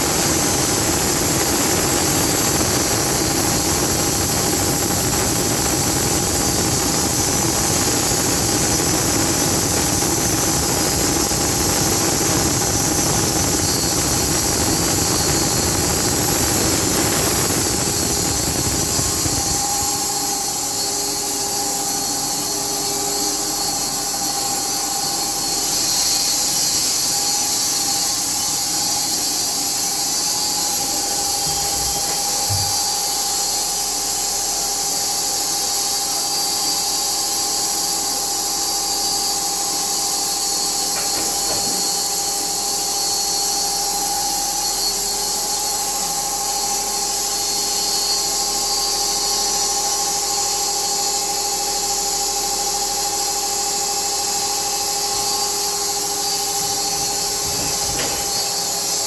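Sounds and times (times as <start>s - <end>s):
sawmill hiss: 0.0s - 49.7s, 51.2s - 59.0s
sawmill high whine: 0.0s - 59.0s.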